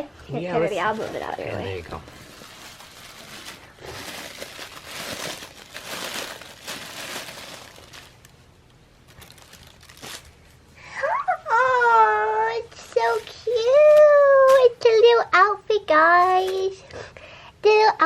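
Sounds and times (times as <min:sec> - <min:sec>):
packaging crinkling: 0:00.9 - 0:10.6.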